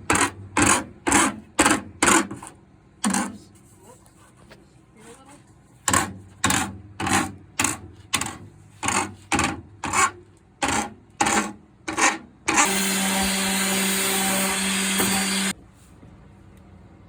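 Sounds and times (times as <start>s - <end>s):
small electric tool whirring: 12.0s - 15.6s.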